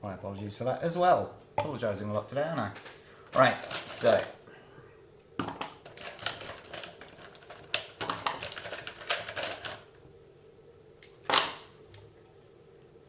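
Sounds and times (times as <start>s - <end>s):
small parts and tools handled: 2.8s - 4.4s, 5.4s - 9.9s.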